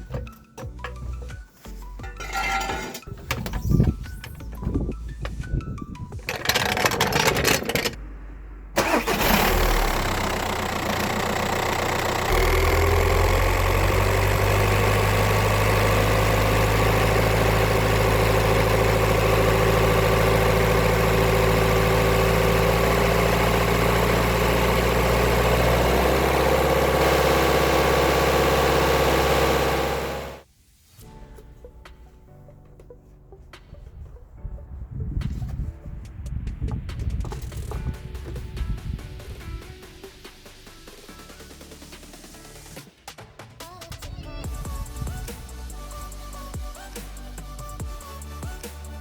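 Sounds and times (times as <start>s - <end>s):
diesel engine starting and idling: 2.4s - 30.5s.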